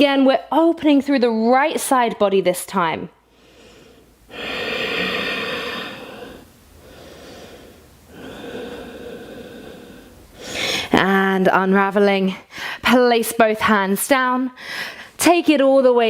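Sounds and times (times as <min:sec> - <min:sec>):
person breathing deeply: 0:03.2 - 0:10.9.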